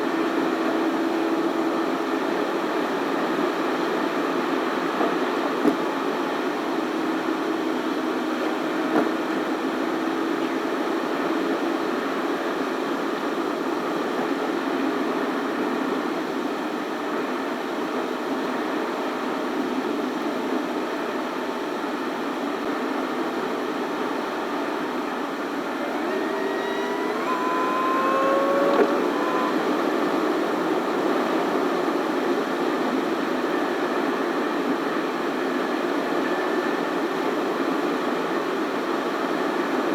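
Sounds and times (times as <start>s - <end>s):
car engine running: 25.5s - 31.6s
short tones climbing in pitch: 25.8s - 29.9s.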